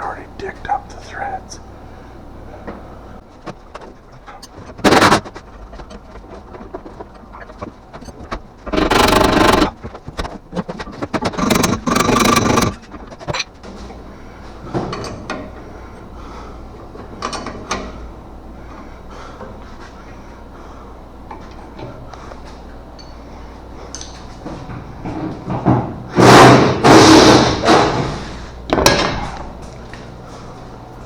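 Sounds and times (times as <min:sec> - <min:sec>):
impact wrench bursts: 0:04.7 - 0:05.3, 0:08.7 - 0:09.8, 0:11.1 - 0:12.8, 0:26.2 - 0:28.0.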